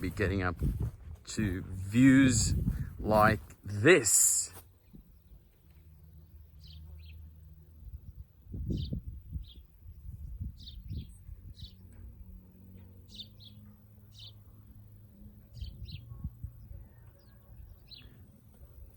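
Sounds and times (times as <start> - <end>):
birds chirping: 0.0 - 7.3, 12.7 - 14.5, 15.5 - 18.6.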